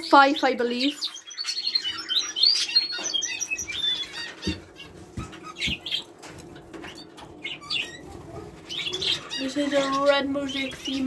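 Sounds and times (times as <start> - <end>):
songbirds chirping: 0.0 - 11.0.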